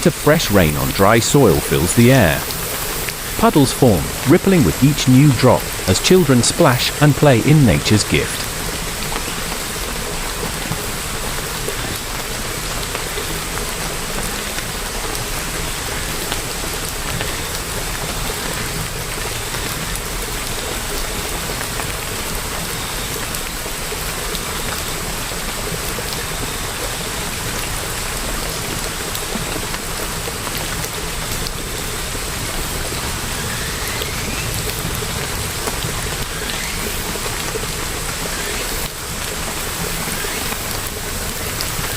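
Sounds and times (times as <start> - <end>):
steady rain hissing: 0.0 - 41.9.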